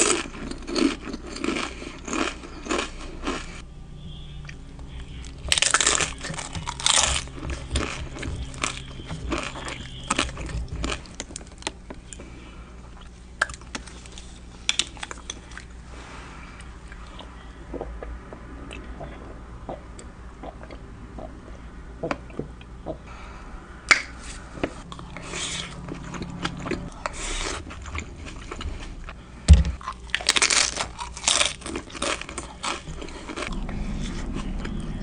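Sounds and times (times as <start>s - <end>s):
chewing with mouth clicks: 5.2s - 12.2s, 29.8s - 35.0s
loud crunchy bites: 5.5s - 11.4s, 29.8s - 34.1s.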